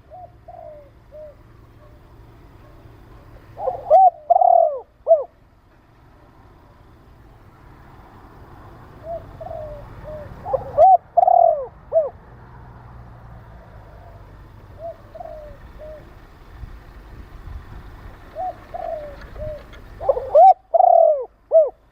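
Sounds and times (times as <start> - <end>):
dove cooing: 0.0 - 5.5, 8.6 - 12.3, 13.8 - 16.5, 17.8 - 21.9.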